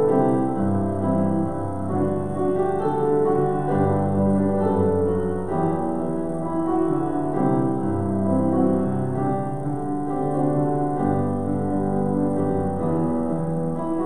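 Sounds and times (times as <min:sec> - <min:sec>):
slow keyboard chords: 0:00.0 - 0:14.0.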